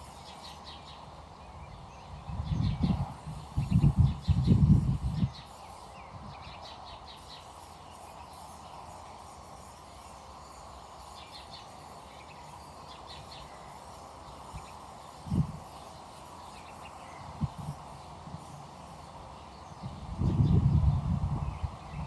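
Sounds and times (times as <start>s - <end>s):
outdoor background hiss: 0.0s - 22.0s
low rumbles on microphone: 19.9s - 22.0s.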